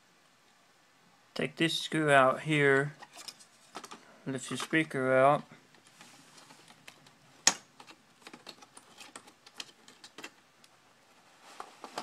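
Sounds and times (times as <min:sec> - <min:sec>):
plastic parts clicking: 0:06.6 - 0:10.4.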